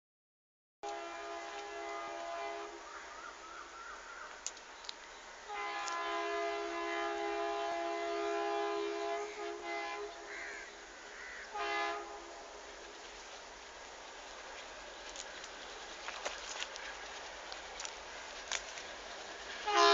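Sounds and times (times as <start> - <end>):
locomotive two-tone air horn: 0.8 - 2.8, 5.5 - 10.3, 11.5 - 12.5, 19.6 - 19.9.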